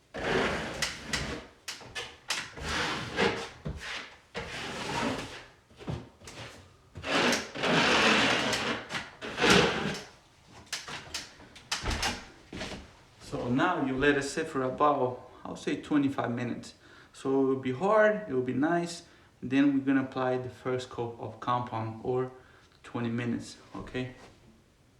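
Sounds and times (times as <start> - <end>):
drywall knife scraping: 0.1 - 5.6, 6.2 - 11.3.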